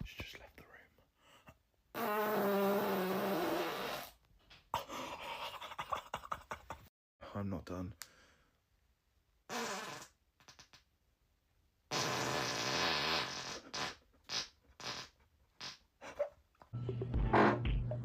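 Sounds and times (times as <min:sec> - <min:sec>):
person farting: 0:01.9 - 0:04.2, 0:09.5 - 0:10.9, 0:11.9 - 0:16.2.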